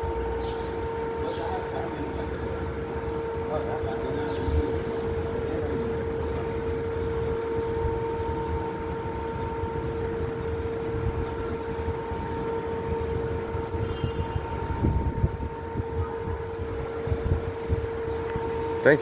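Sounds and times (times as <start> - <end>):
low street rumble: 0.0 - 19.0.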